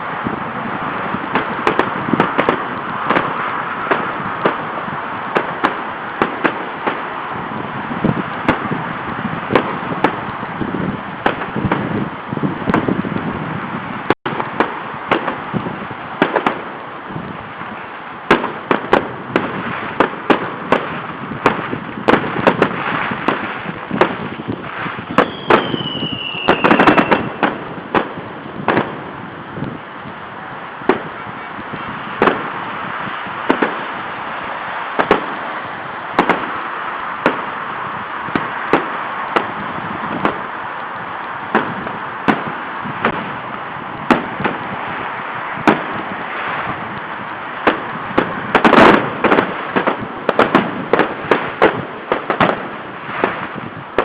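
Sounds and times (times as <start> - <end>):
fireworks bangs: 0.0 - 54.0
steady hiss: 0.0 - 54.0
falling firework whistle: 18.3 - 28.1.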